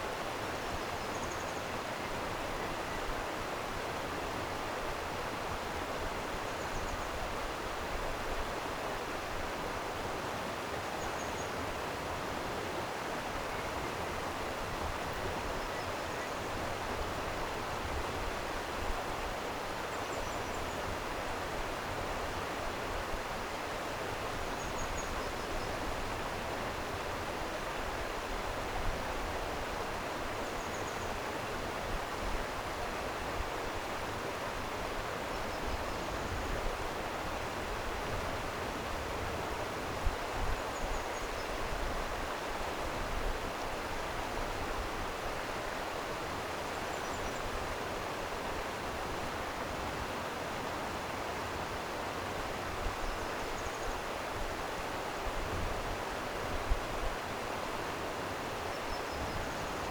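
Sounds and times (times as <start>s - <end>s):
faint bird chirps: 0.8s - 1.7s, 53.0s - 54.1s
stream water flowing: 36.1s - 59.9s.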